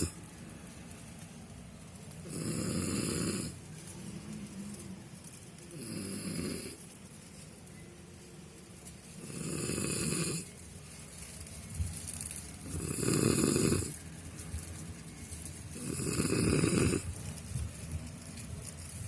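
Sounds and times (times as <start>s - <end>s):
man snoring: 2.3s - 3.6s, 9.2s - 10.4s, 12.8s - 13.9s, 15.8s - 17.0s.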